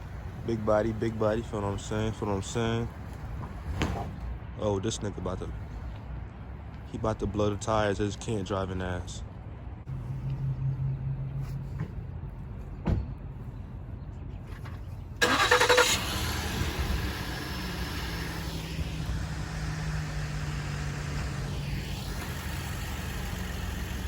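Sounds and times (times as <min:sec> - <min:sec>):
car engine starting and running: 0:14.5 - 0:24.0.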